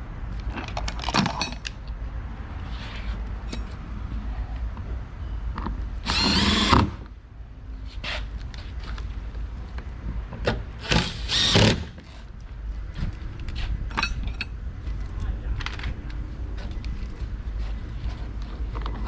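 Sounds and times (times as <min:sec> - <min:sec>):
power drill spinning: 0:06.0 - 0:07.0, 0:10.8 - 0:11.9.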